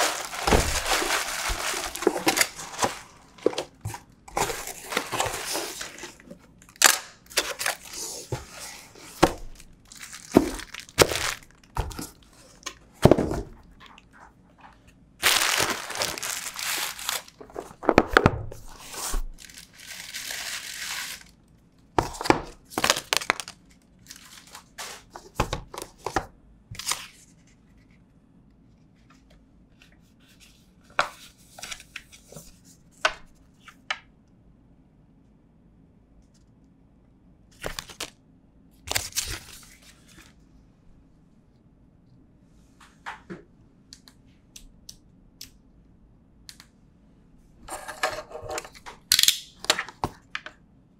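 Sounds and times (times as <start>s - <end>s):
plastic wrap and paper tearing: 0.0s - 3.4s, 4.4s - 12.1s, 15.2s - 17.8s, 18.6s - 21.3s, 22.8s - 25.2s.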